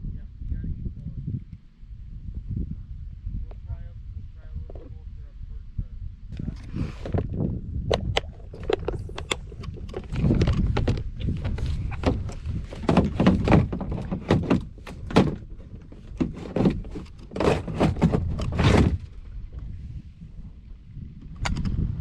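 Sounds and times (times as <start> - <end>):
microphone handling rumble: 0.0 - 22.0
knocks against plastic kayak: 10.0 - 15.4.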